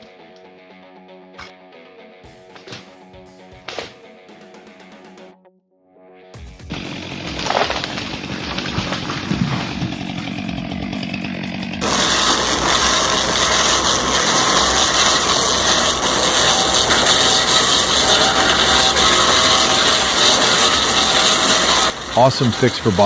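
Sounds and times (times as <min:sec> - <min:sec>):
power saw cutting wood: 0:06.4 - 0:23.0.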